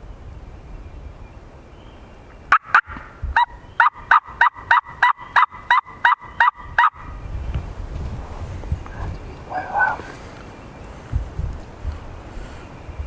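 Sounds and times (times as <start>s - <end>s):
turkey yelps: 2.5s - 7.2s.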